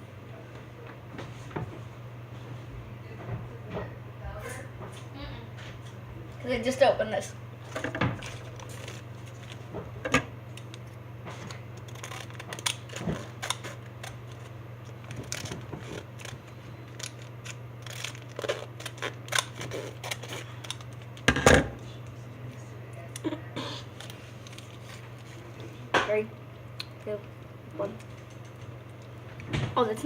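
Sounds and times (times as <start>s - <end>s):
steady low hum: 0.0s - 30.0s
candy packaging rustling: 7.6s - 22.0s, 23.7s - 25.9s.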